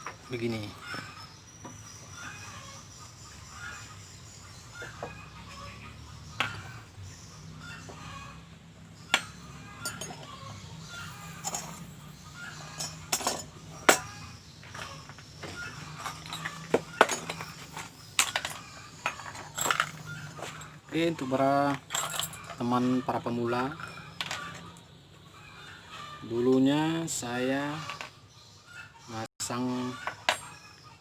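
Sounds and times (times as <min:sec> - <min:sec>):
chickens clucking: 0:00.0 - 0:31.0
tools clicking and knocking: 0:09.1 - 0:10.3, 0:11.4 - 0:12.0, 0:12.7 - 0:20.6, 0:21.7 - 0:22.6, 0:30.0 - 0:30.6.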